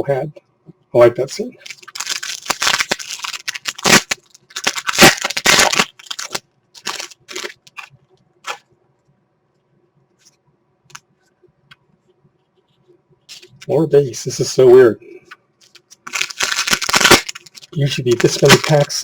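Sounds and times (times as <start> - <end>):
foil wrapper crinkling and tearing: 1.6 - 7.9, 13.3 - 13.7, 15.6 - 19.0.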